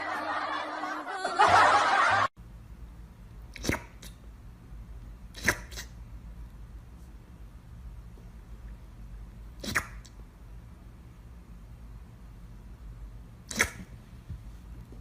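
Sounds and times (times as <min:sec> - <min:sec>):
people laughing: 0:00.0 - 0:02.3
low steady hum: 0:00.0 - 0:15.0.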